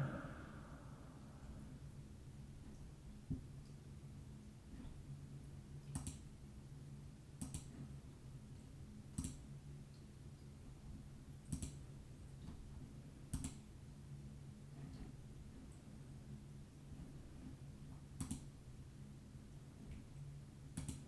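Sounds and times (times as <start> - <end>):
low steady hum: 0.0 - 1.7
computer mouse clicking: 5.9 - 6.2, 7.4 - 7.7, 18.2 - 18.4, 20.8 - 21.0.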